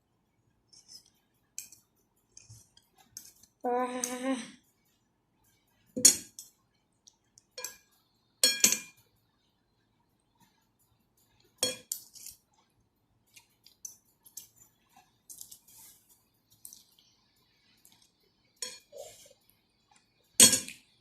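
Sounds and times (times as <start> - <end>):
cutlery clinking on soup bowl: 7.6 - 9.1, 11.6 - 12.4, 18.6 - 19.0.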